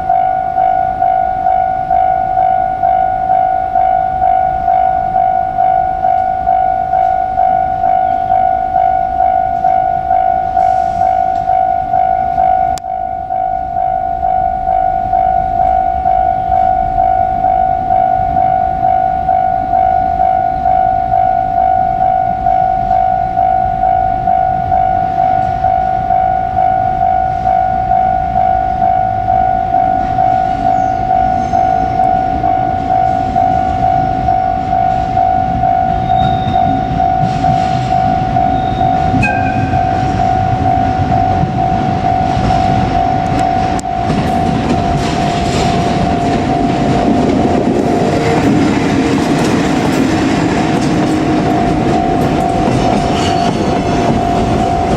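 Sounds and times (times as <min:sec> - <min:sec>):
freight train passing: 0:00.0 - 0:54.9
level crossing alarm ringing: 0:00.0 - 0:54.9
wagon wheels clattering on rail joints: 0:35.9 - 0:54.9.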